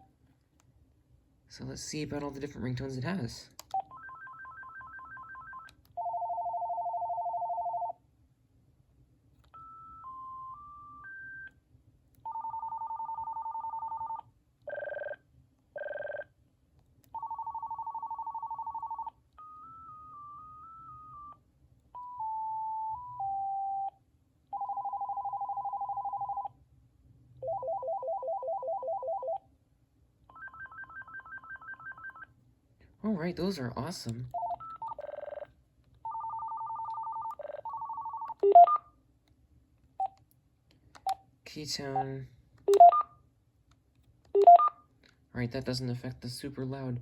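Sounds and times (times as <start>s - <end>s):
phone ringtones: 3.8s - 8.0s, 9.5s - 11.6s, 12.3s - 15.2s, 17.2s - 21.4s, 24.5s - 26.5s, 27.4s - 29.4s, 30.3s - 32.3s, 34.4s - 35.5s, 36.1s - 38.8s, 42.7s - 43.1s.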